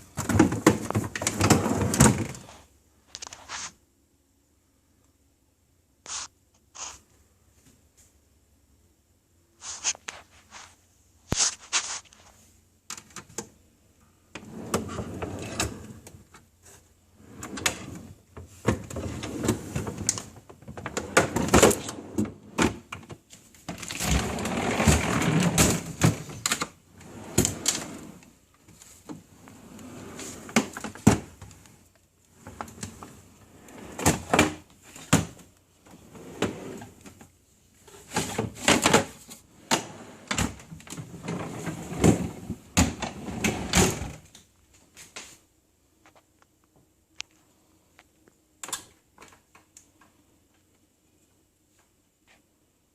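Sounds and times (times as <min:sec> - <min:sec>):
items handled in refrigerator: 0:00.0 - 0:02.5, 0:14.3 - 0:29.6, 0:30.2 - 0:31.7.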